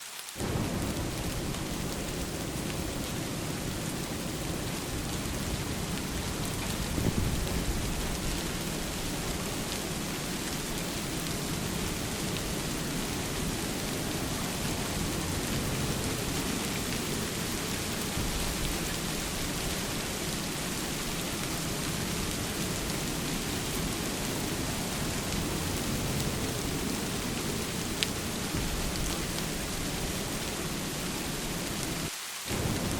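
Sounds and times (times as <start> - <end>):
heavy rain on water: 0.0 - 32.9.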